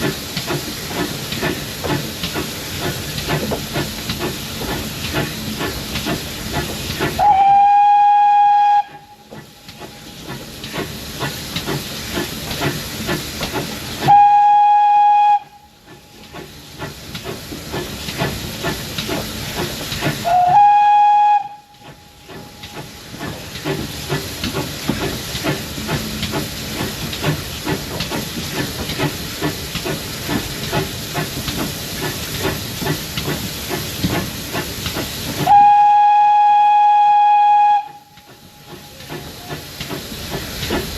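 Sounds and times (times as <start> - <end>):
steam hissing with quick beat: 0.0 - 40.9
steam locomotive whistle blasts: 7.2 - 9.3, 14.0 - 15.8, 20.2 - 21.9, 35.4 - 38.2.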